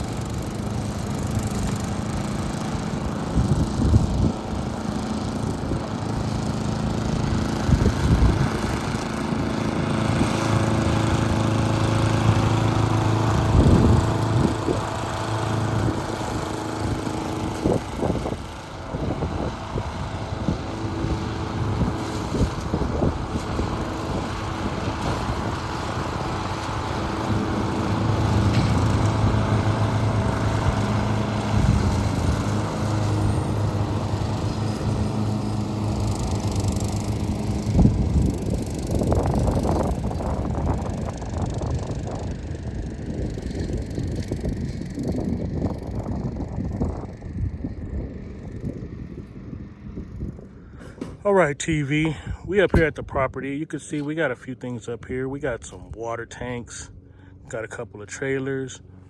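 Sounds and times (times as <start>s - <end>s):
engine running: 0.0s - 59.0s
knocks and rattles: 50.8s - 51.3s.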